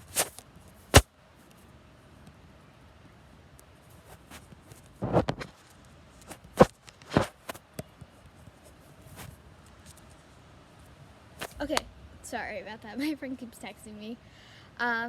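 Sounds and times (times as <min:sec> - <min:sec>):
rustling: 0:00.0 - 0:01.6, 0:03.8 - 0:07.6, 0:08.2 - 0:10.4, 0:11.4 - 0:11.9.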